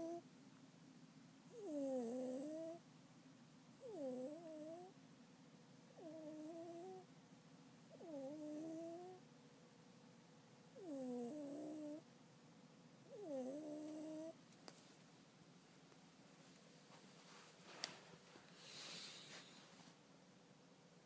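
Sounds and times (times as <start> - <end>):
cat snoring: 0.0 - 0.2, 1.5 - 2.8, 3.8 - 4.9, 6.0 - 7.1, 7.9 - 9.2, 10.8 - 12.0, 13.1 - 14.4.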